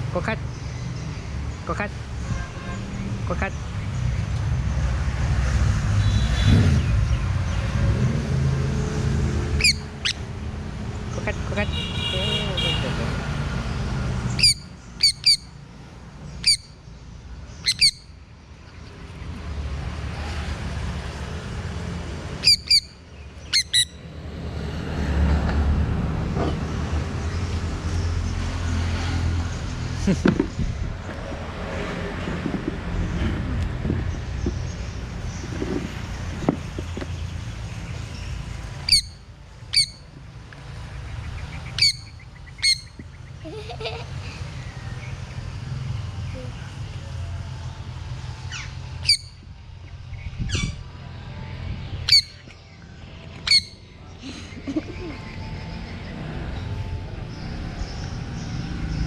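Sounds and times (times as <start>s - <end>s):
low traffic rumble: 0.0s - 59.0s
parrot squawking shrilly: 9.6s - 10.2s, 14.4s - 15.5s, 16.4s - 16.7s, 17.6s - 18.0s, 22.4s - 22.9s, 23.5s - 24.0s, 38.9s - 40.0s, 41.8s - 43.0s, 48.5s - 49.4s, 52.1s - 52.4s, 53.5s - 53.8s.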